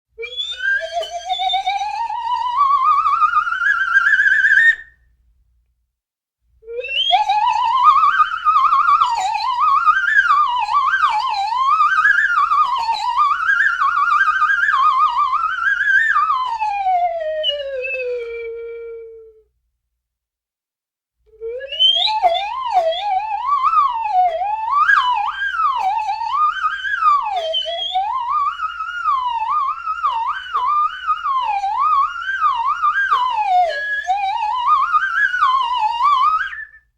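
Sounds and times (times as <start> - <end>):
cartoon wobbling whistle: 0.2 - 4.9, 21.4 - 36.8.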